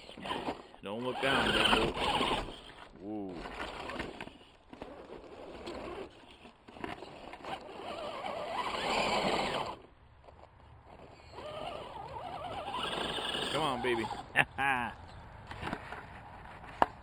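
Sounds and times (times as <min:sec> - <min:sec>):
electric motor whining: 0:00.1 - 0:02.8, 0:07.4 - 0:09.8, 0:11.2 - 0:14.3.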